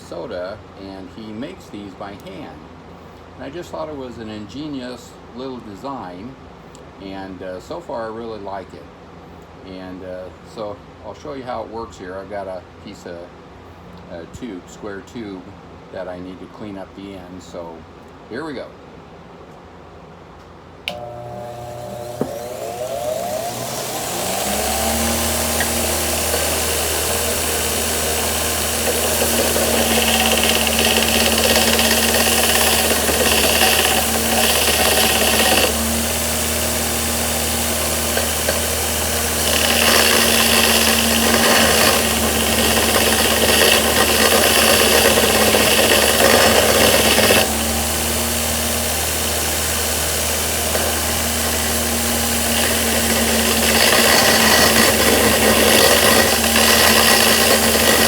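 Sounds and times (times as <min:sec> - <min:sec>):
grinder motor humming: 0:20.9 - 0:58.0
metal tube grinding on belt: 0:20.9 - 0:58.0.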